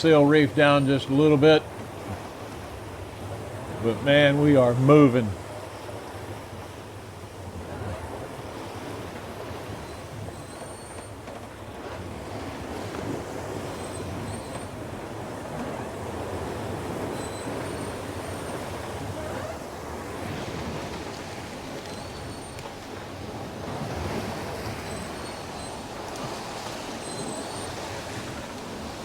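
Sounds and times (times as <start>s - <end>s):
rushing water: 0.0s - 29.0s.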